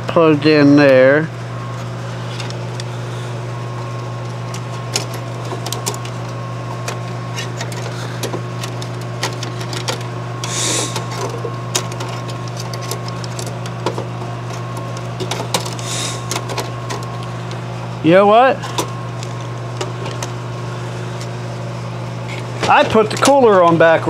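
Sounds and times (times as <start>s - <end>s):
steady low hum: 0.0s - 24.0s
computer parts clicking and rattling: 4.5s - 17.3s, 22.6s - 23.9s
hissing scrape: 10.5s - 11.1s, 15.8s - 16.3s.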